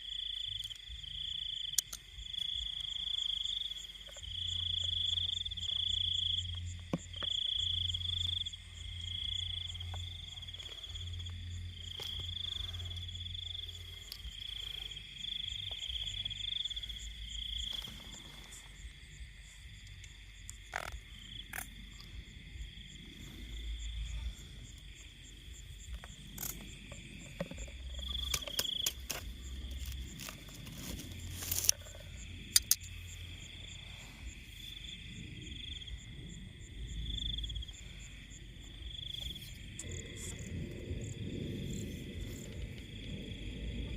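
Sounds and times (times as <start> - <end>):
insect buzzing: 0.0 - 40.5
fast chirping crickets: 0.0 - 43.9
high trilling frog call: 19.9 - 22.3.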